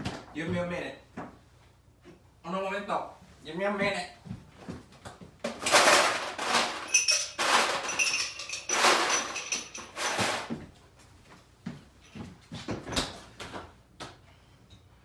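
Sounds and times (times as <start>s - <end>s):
ice cubes rattling: 5.6s - 10.5s
ringing clinks: 6.8s - 10.0s.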